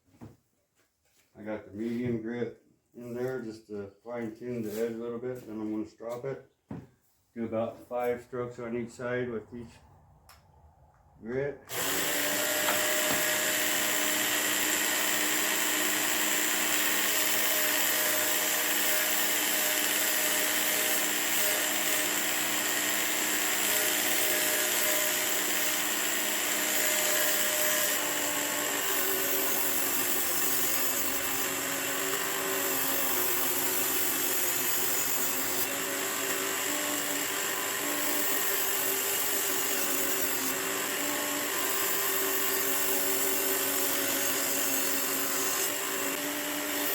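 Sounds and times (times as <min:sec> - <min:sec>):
blade grinding on belt: 0:11.7 - 0:46.9
electric belt sharpener hum: 0:11.7 - 0:46.9.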